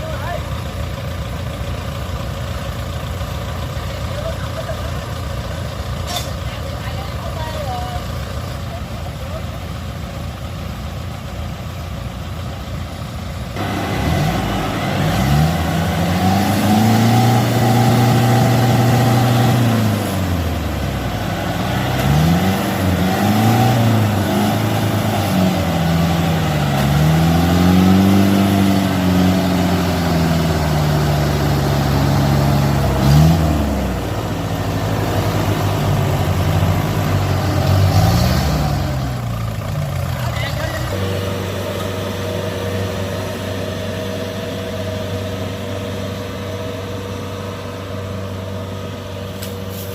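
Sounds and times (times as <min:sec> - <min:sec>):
diesel engine revving: 0:00.0 - 0:49.9.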